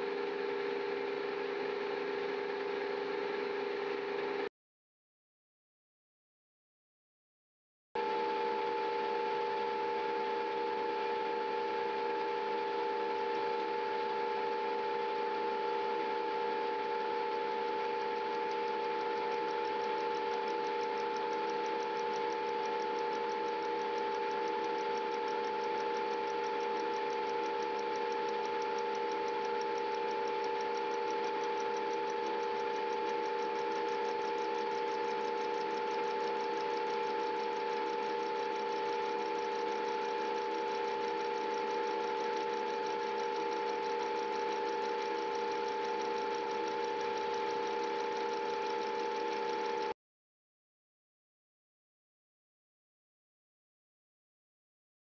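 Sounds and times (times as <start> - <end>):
metal lathe humming and whining: 0.0 - 4.5.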